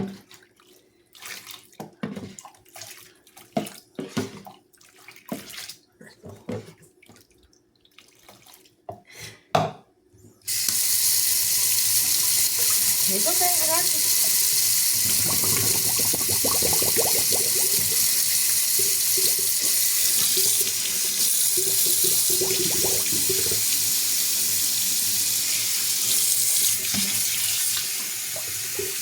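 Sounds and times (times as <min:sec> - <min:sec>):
tap water running: 0:10.5 - 0:29.0.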